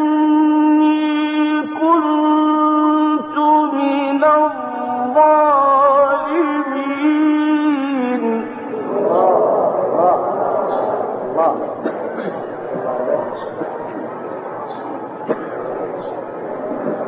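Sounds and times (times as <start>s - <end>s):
man chanting melodically: 0.0s - 14.0s.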